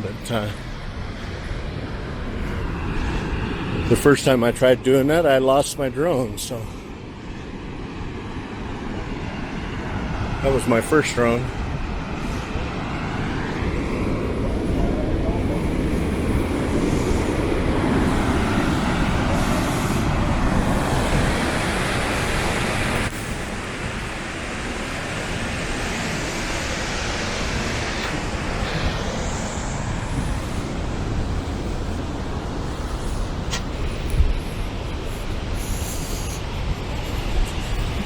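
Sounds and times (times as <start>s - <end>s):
waterfall roar: 10.4s - 38.0s.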